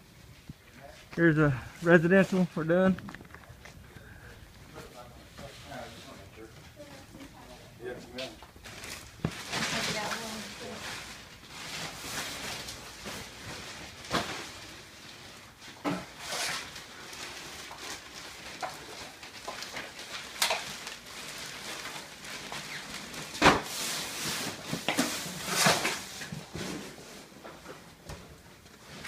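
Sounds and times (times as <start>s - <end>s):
rustling: 0.1s - 29.0s.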